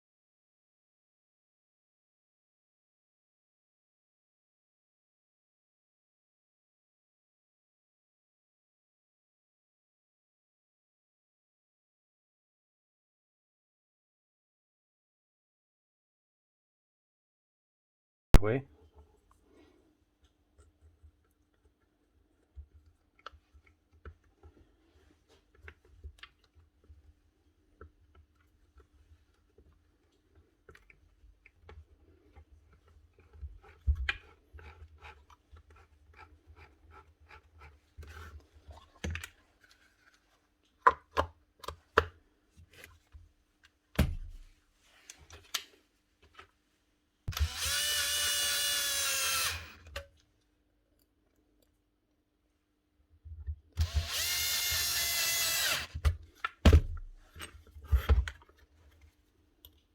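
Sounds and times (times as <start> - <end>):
power tool motor whine: 47.3 - 49.8, 53.8 - 56.0.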